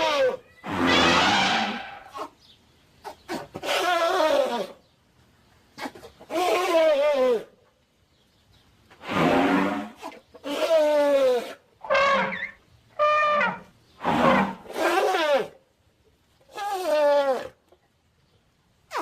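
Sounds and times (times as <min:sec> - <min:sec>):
trumpet-like creature calls: 0:00.0 - 0:02.3, 0:11.8 - 0:15.5.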